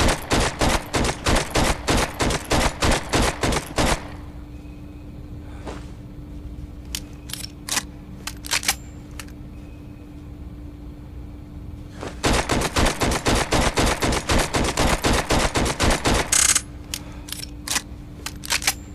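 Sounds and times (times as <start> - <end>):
rapid pistol shots: 0.0 - 4.3, 12.2 - 16.7
low steady hum: 0.0 - 18.9
sharp clicks: 12.3 - 18.8.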